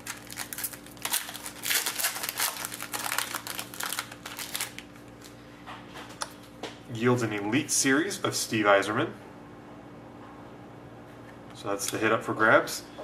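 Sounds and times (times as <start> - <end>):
wrapper tearing and crinkling: 0.0 - 5.3.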